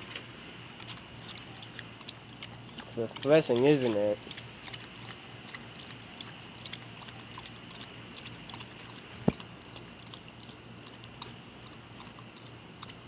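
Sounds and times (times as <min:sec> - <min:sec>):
pet lapping water: 0:00.1 - 0:13.0.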